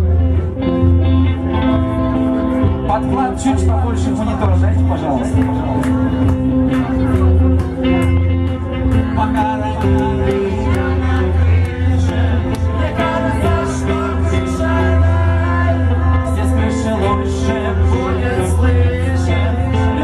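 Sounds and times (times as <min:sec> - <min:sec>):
bass notes: 0:00.0 - 0:20.0
guitar: 0:00.0 - 0:20.0
person singing: 0:08.6 - 0:20.0.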